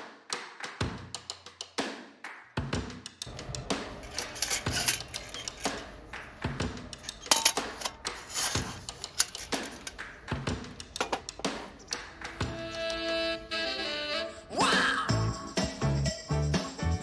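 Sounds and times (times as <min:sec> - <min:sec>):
metal cookware clattering: 0:03.3 - 0:15.9.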